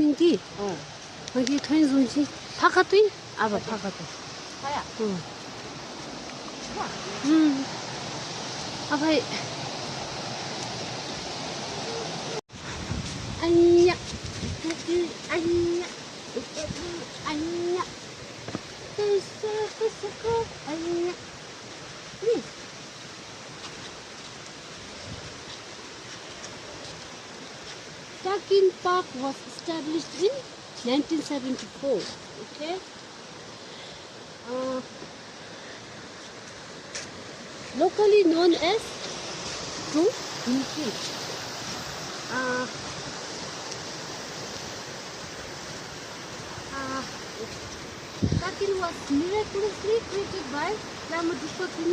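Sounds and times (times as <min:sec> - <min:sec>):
steady background hiss: 0:00.0 - 0:51.9
young child's voice: 0:14.6 - 0:17.9.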